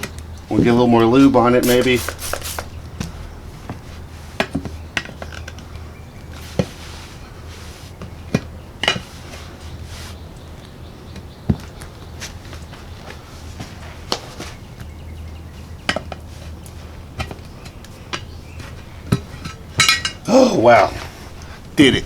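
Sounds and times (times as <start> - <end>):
low steady hum: 0.0 - 22.0
metal tools clinking on wheel rim: 18.1 - 20.2.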